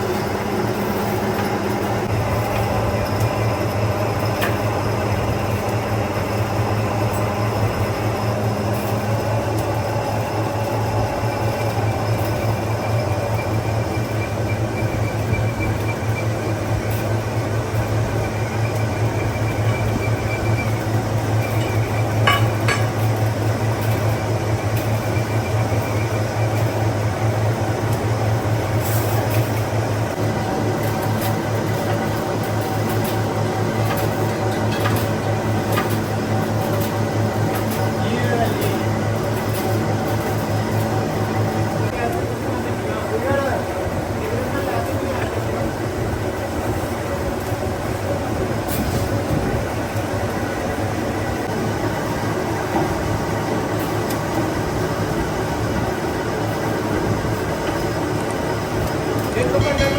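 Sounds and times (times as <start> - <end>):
factory machinery humming: 0.0 - 59.9
mechanical clatter: 18.7 - 25.0
metallic clink: 21.6 - 23.1.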